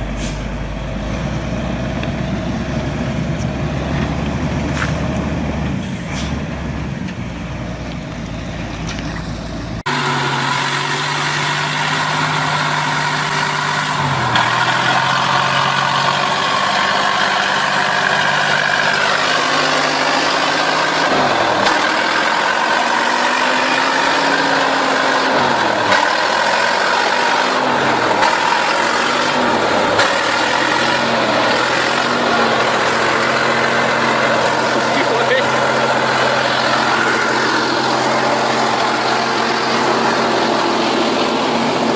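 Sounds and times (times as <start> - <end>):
heavy vehicle engine revving: 0.0 - 41.9.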